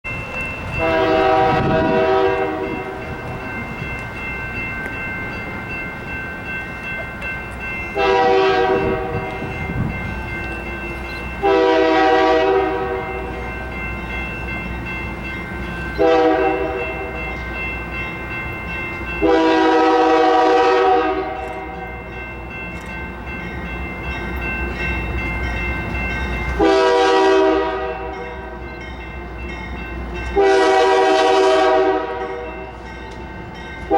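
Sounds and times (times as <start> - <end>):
train rolling: 0.1 - 33.9
locomotive air horn blasts: 0.8 - 2.8, 8.0 - 9.3, 11.4 - 13.3, 16.0 - 17.2, 19.2 - 21.8, 26.6 - 28.2, 30.4 - 32.5.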